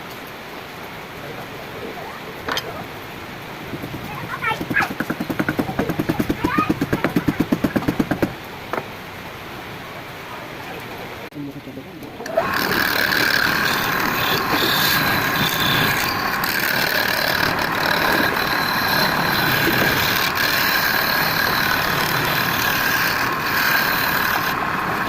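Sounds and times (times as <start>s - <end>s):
woodturning lathe whine: 12.2s - 25.0s.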